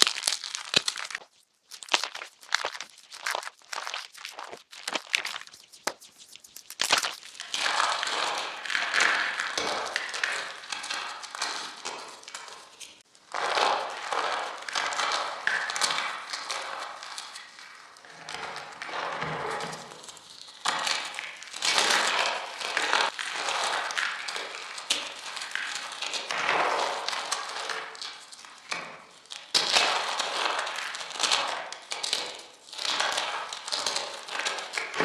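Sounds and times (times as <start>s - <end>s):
chalk crunching and crumbling: 0.0s - 17.5s.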